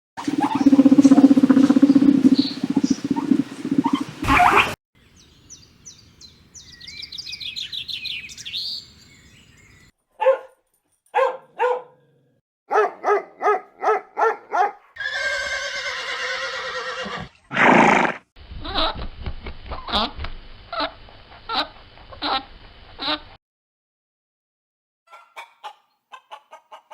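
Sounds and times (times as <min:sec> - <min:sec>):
harsh animal call: 0:00.2 - 0:04.8
short pitched barking calls: 0:00.2 - 0:04.8, 0:10.2 - 0:10.6, 0:11.2 - 0:12.0, 0:12.7 - 0:14.8.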